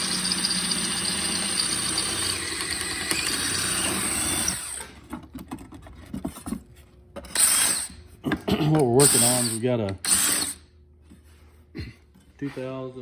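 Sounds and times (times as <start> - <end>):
power tool running: 0.0 - 5.0, 9.0 - 10.6.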